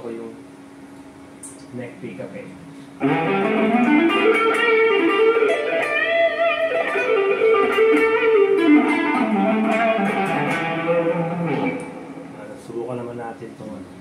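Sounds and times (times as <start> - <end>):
electric guitar lead line: 3.0 - 12.6.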